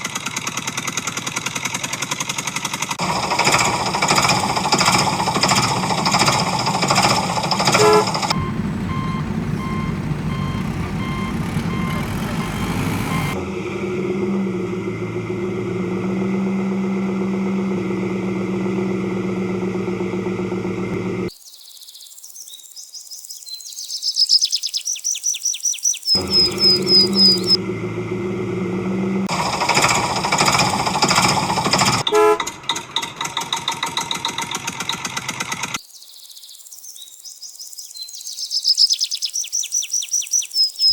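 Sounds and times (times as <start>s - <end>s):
fast mechanical rattle: 0.0s - 13.4s, 29.3s - 35.8s
vehicle engine idling: 0.0s - 21.3s, 26.2s - 35.8s
vehicle horn honk: 7.7s - 13.3s, 32.0s - 32.6s
rapid high bird chirps: 21.3s - 27.6s, 35.8s - 40.9s.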